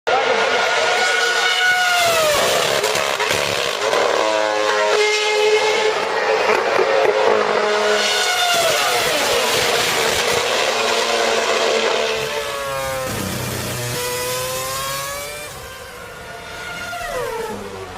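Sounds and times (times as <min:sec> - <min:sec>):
race car engines passing: 0:00.1 - 0:17.9.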